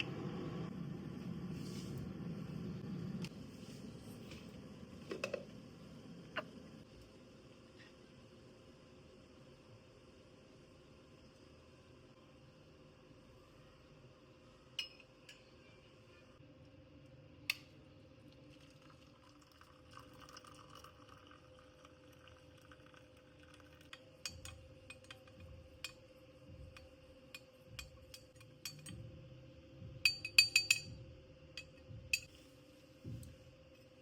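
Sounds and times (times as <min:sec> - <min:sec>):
faint hum: 0:00.0 - 0:34.0
glassware and dishes clinking: 0:27.8 - 0:29.0, 0:30.0 - 0:31.0.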